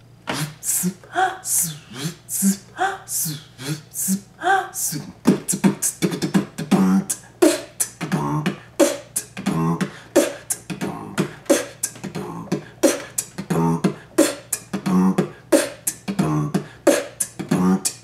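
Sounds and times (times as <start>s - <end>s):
human beatbox rhythm: 0.3s - 4.2s, 4.8s - 18.0s
hummed low notes: 8.0s - 10.0s.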